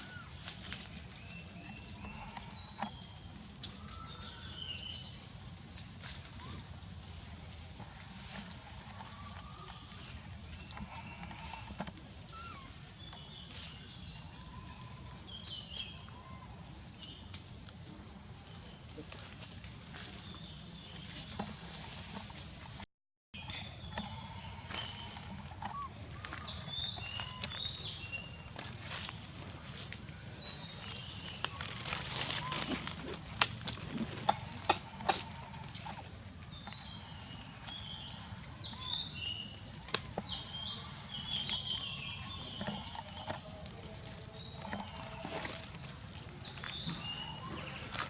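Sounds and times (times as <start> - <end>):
animals chirping and squeaking: 5.8 - 15.2, 23.4 - 28.0, 33.9 - 48.0.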